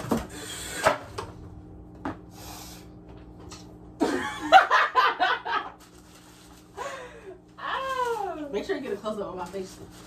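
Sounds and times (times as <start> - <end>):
person laughing: 4.0 - 5.8.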